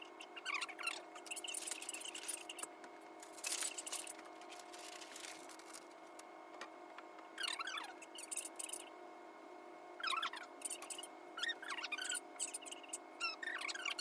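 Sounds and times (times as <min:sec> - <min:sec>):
steady hum: 0:00.0 - 0:13.4
rustling and clattering bursts: 0:01.3 - 0:06.2
squeaky sped-up voice: 0:07.4 - 0:08.9, 0:10.0 - 0:14.0.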